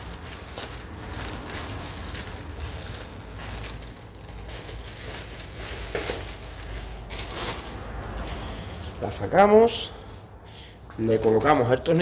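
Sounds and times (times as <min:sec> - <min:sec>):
packaging crackle: 0:00.0 - 0:07.8
packaging rustling and crinkling: 0:00.0 - 0:07.8.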